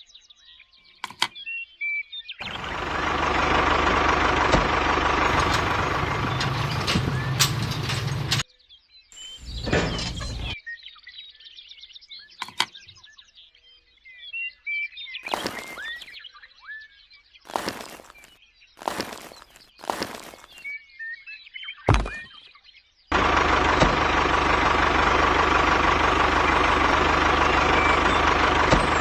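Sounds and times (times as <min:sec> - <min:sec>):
small motor rattling: 0:15.2 - 0:16.1
birds chirping faintly: 0:15.2 - 0:16.2, 0:17.5 - 0:20.7.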